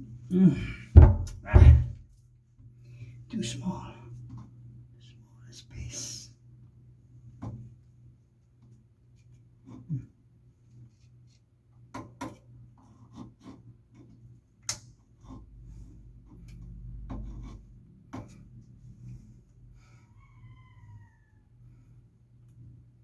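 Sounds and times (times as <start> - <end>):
low rumble: 1.0 - 2.0.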